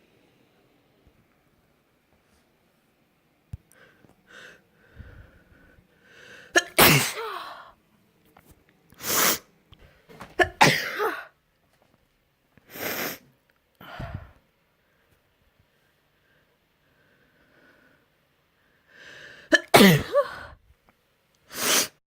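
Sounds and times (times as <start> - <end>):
person sneezing: 6.6 - 7.7, 9.0 - 9.4, 10.1 - 11.4, 19.5 - 20.6, 21.5 - 22.0.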